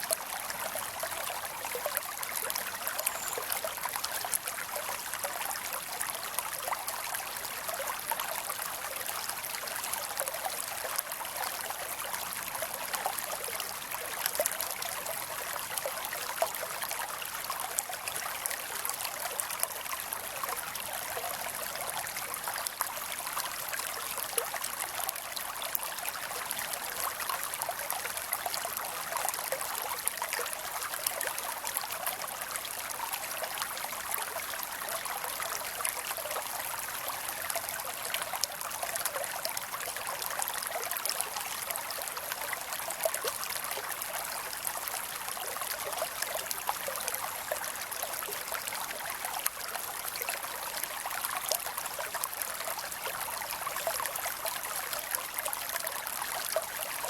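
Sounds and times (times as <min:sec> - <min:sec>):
creek flowing and trickling: 0:00.0 - 0:57.0.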